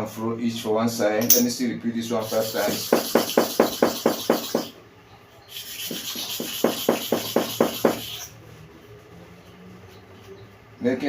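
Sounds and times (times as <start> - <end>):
blade rubbed on sharpening stone: 5.5 - 8.4.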